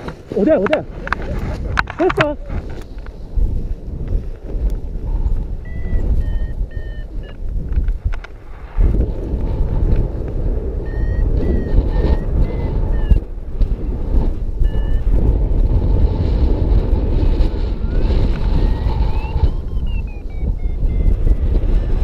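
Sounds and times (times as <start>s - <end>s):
strong wind rushing over microphone: 0.0s - 22.0s
variometer electronic beeps: 5.6s - 7.4s, 10.8s - 14.0s, 14.6s - 15.4s, 17.5s - 22.0s.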